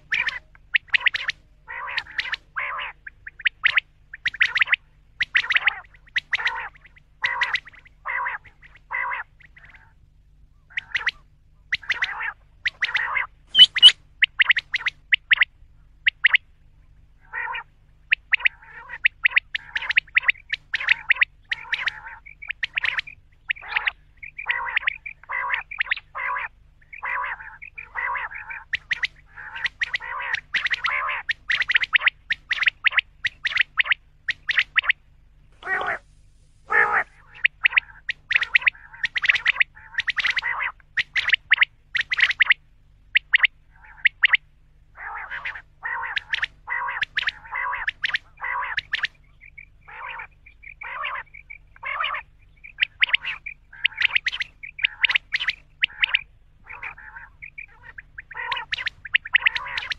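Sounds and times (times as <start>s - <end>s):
quail calling: 0.0s - 59.9s.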